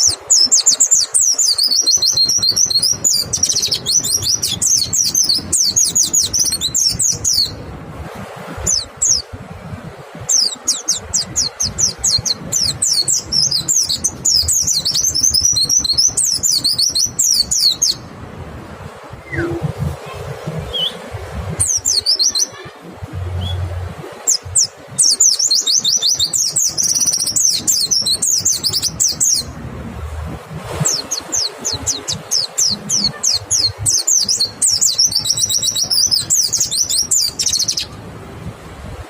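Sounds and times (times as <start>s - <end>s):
bird singing high whistled notes: 0.0s - 7.6s, 10.4s - 18.1s, 19.2s - 19.7s, 20.7s - 21.0s, 21.6s - 22.6s, 24.3s - 29.6s, 30.9s - 37.9s.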